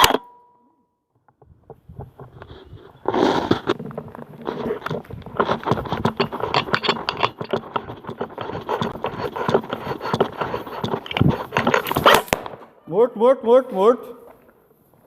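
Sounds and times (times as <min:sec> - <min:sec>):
scraping and rattling knocks: 0:01.3 - 0:12.2.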